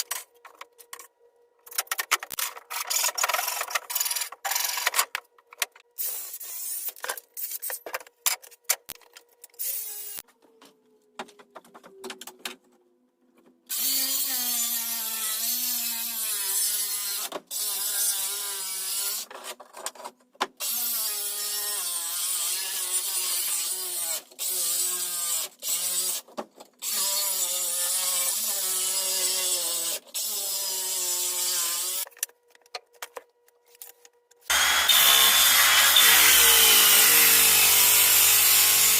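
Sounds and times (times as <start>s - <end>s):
power tool cutting into wood: 34.5s - 38.9s.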